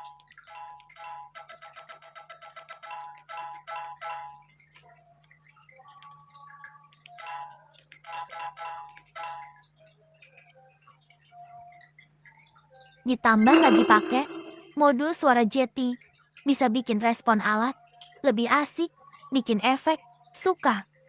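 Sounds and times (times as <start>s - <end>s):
plucked background music: 13.4s - 14.9s.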